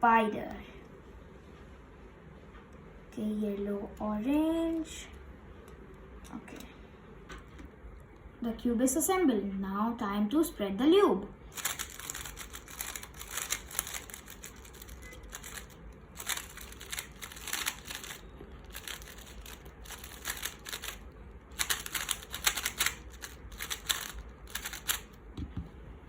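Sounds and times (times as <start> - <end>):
puzzle cube plastic clicking: 11.6 - 25.1.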